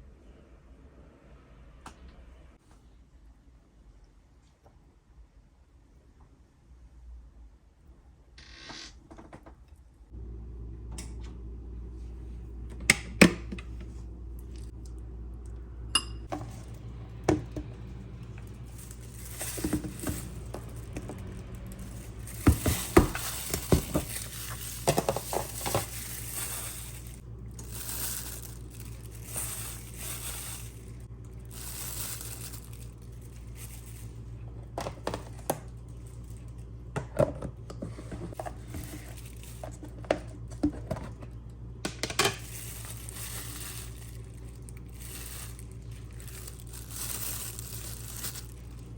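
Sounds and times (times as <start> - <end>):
steady low hum: 10.1 - 48.9
rustling and crinkling: 16.2 - 36.8, 37.5 - 41.5, 42.4 - 48.9.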